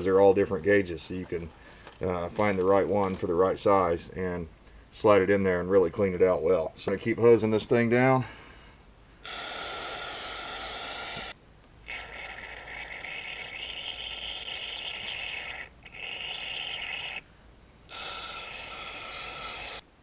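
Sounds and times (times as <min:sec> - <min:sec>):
aerosol can spraying: 0:09.3 - 0:11.3.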